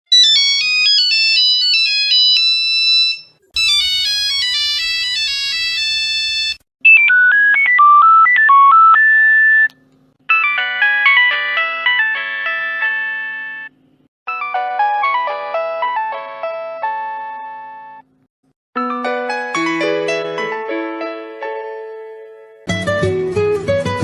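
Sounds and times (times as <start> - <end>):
mobile phone ringtones: 0.2 - 9.7, 10.3 - 13.7.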